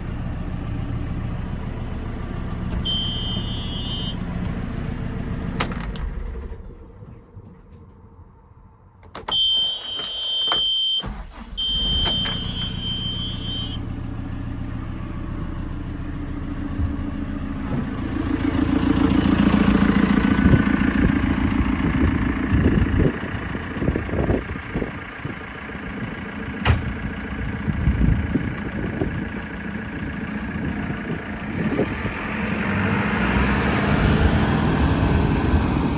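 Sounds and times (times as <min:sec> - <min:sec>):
diesel engine starting and revving: 0:00.0 - 0:35.9
high electronic beeps: 0:11.6 - 0:13.8.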